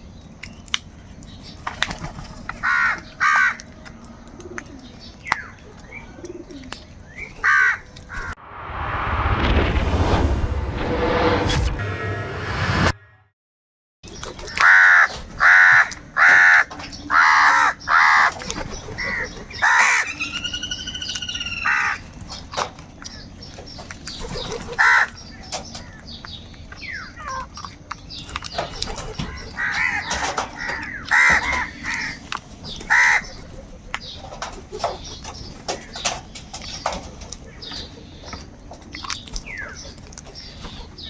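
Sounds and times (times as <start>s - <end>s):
crows cawing: 2.2s - 8.4s, 14.4s - 23.2s, 24.3s - 26.2s, 28.5s - 35.0s.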